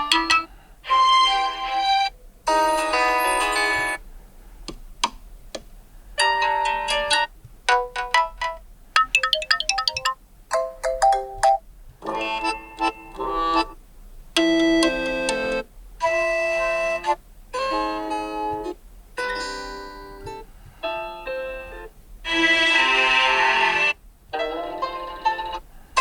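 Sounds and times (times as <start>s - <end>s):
short ringtone melodies: 2.5s - 4.0s, 6.4s - 13.6s.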